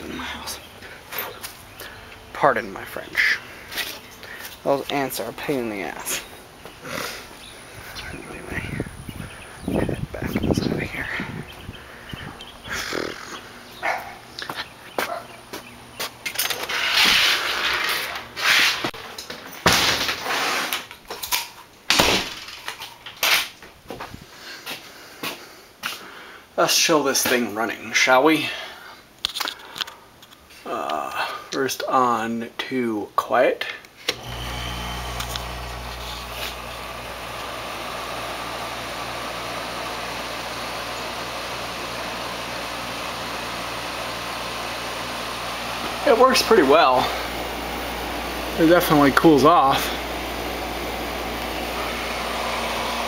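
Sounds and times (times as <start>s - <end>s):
air conditioner humming: 0.0s - 20.2s, 34.1s - 53.0s
rustling and scraping: 14.4s - 21.6s
door opening and shutting: 16.3s - 18.8s.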